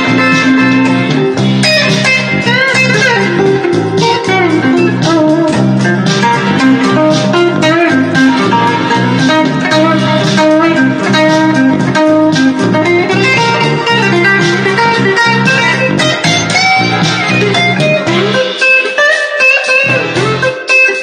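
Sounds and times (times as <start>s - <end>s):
low bass line: 0.0s - 18.4s
plucked guitar notes: 0.0s - 21.0s.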